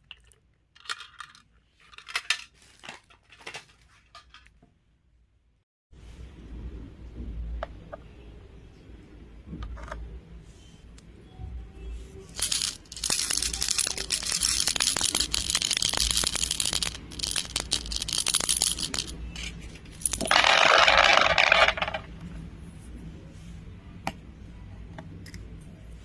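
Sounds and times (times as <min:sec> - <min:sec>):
beads pouring: 0:12.3 - 0:22.1
beads rattling and clicking: 0:12.3 - 0:22.1.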